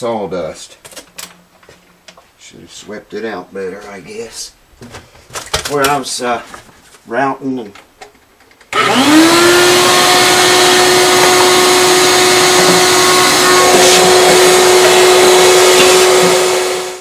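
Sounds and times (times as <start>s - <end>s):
vacuum cleaner whining: 8.7s - 17.0s.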